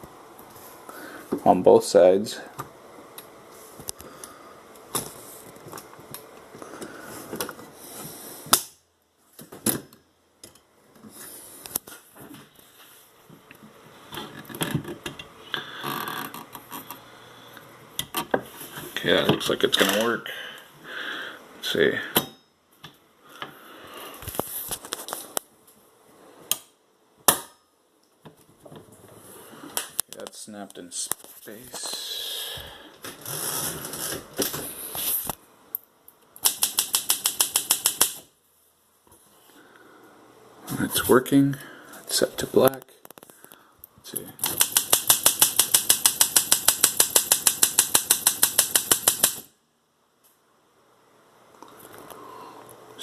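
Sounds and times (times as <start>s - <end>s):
manual typewriter clacking: 36.4s - 38.2s, 44.4s - 49.5s.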